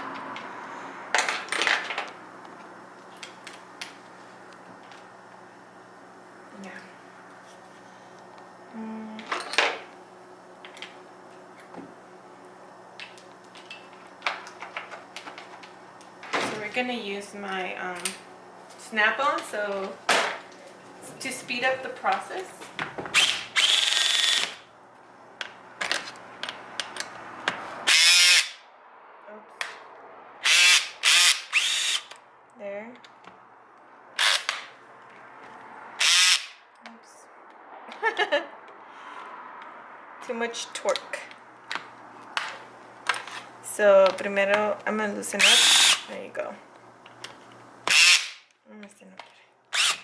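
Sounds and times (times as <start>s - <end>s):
power tool spinning fasteners: 23.1s - 24.6s, 27.8s - 28.6s, 30.4s - 32.2s, 34.2s - 34.7s, 36.0s - 36.6s, 45.3s - 46.2s, 47.8s - 48.5s, 49.7s - 50.0s.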